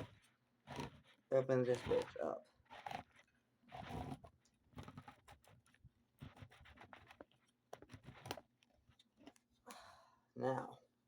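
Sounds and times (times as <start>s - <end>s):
container clicks and scrapes: 0.0s - 8.5s.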